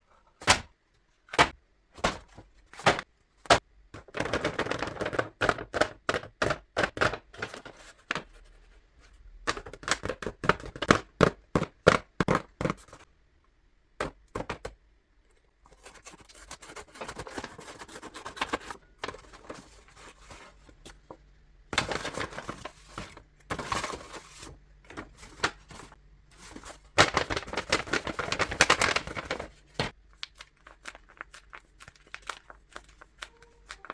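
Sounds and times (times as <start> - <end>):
paper rustling and crinkling: 1.4 - 10.9, 15.7 - 21.2, 21.8 - 33.9.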